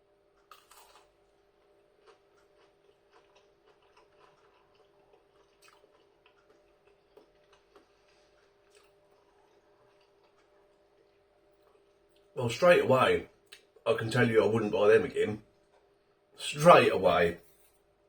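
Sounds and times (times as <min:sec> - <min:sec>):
faint steady hum: 0:00.0 - 0:18.0
person chewing: 0:00.4 - 0:11.8.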